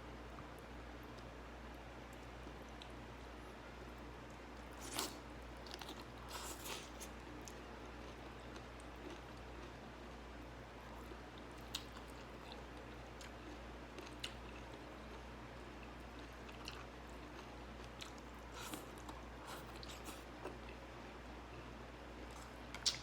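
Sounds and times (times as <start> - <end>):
steady low hum: 0.0 - 23.0
person chewing food: 4.5 - 10.2, 10.8 - 20.8, 22.2 - 23.0.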